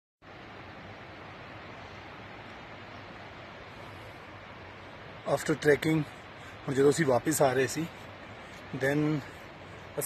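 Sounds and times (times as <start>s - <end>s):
rushing water of stream: 0.2s - 10.0s.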